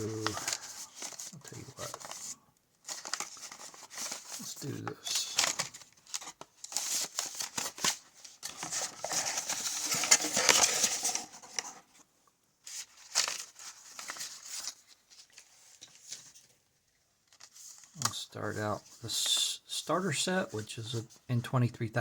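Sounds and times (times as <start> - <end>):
packaging crinkling and tearing: 0.0 - 11.8, 12.7 - 16.4.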